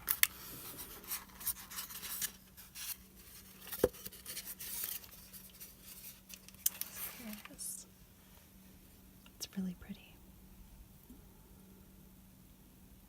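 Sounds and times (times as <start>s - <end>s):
rubbing and rustling: 0.4s - 8.6s.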